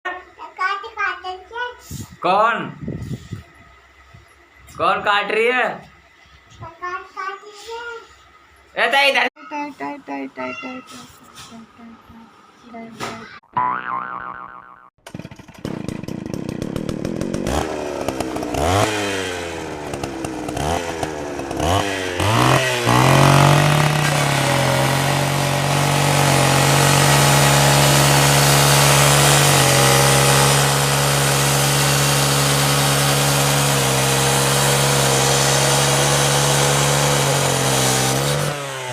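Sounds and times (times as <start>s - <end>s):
chainsaw engine revving: 15.0s - 38.9s.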